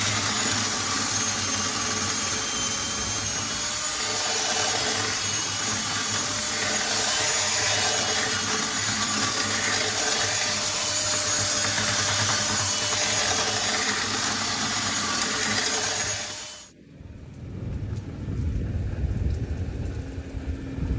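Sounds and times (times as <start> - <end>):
drill spinning scraping brush: 0.0 - 16.7.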